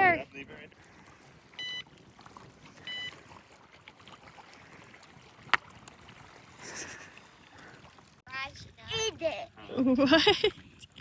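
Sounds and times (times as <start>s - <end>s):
short electronic beeps: 1.6s - 1.8s, 2.8s - 3.1s.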